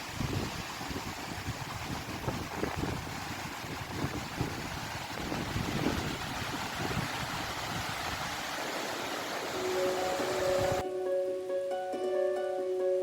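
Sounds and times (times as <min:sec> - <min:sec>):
wind rumbling on microphone: 0:00.0 - 0:09.1
river rushing: 0:00.0 - 0:10.8.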